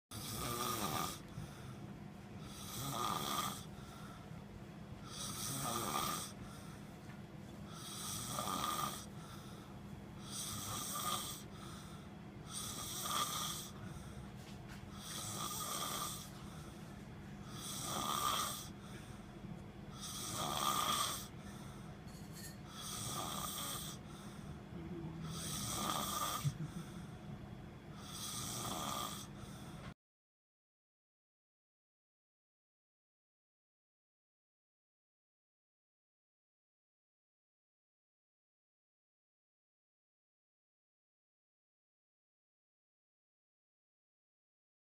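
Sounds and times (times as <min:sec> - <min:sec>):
cat snoring: 0:00.1 - 0:01.8, 0:02.4 - 0:04.2, 0:05.0 - 0:06.8, 0:07.7 - 0:14.2, 0:14.9 - 0:16.8, 0:17.4 - 0:19.2, 0:19.9 - 0:21.8, 0:22.4 - 0:27.2, 0:27.9 - 0:29.9.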